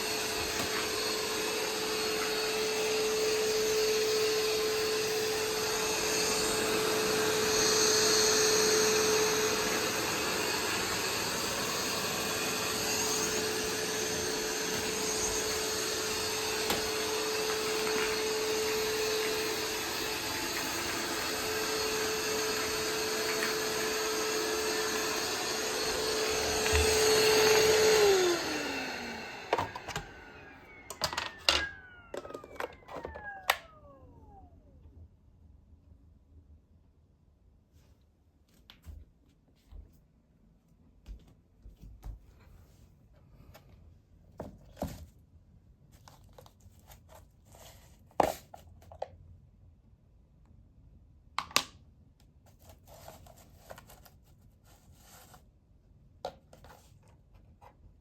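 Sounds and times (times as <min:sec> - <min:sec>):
falling whirs: 0:00.0 - 0:34.8
robot vacuum motor whine: 0:00.0 - 0:34.8.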